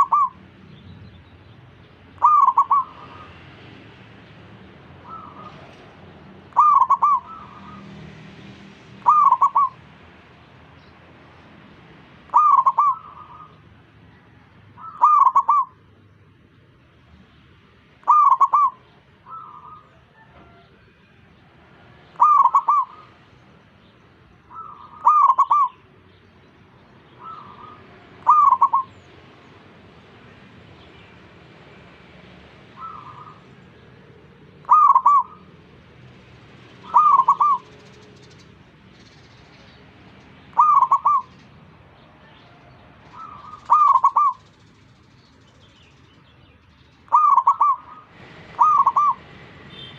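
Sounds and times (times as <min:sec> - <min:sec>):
dove cooing: 0:00.0 - 0:00.4, 0:02.2 - 0:03.4, 0:04.9 - 0:08.0, 0:09.0 - 0:09.9, 0:12.3 - 0:16.0, 0:18.0 - 0:20.8, 0:22.1 - 0:23.2, 0:24.5 - 0:25.9, 0:27.1 - 0:29.0, 0:32.6 - 0:33.8, 0:34.5 - 0:35.8, 0:36.7 - 0:38.6, 0:40.4 - 0:41.6, 0:42.2 - 0:44.5, 0:47.1 - 0:49.3.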